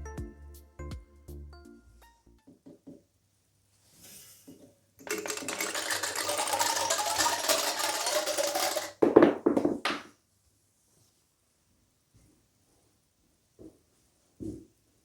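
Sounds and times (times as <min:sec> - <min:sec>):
ball bearings clattering: 0:05.0 - 0:09.8.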